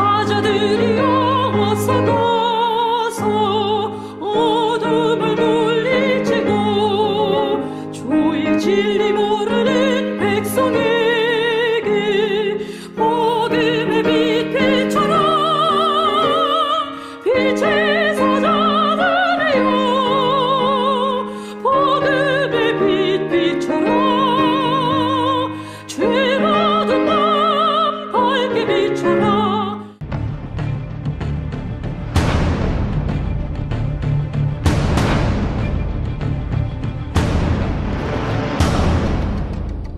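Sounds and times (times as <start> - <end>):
person singing with vibrato: 0.0 - 30.0
sustained musical accompaniment: 0.0 - 39.9
different music: 30.0 - 39.9.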